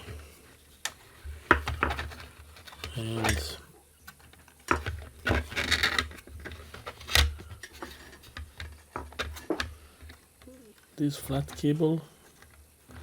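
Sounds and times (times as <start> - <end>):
plastic parts clicking and knocking: 0.8 - 13.0
rustling scrape: 4.9 - 10.2.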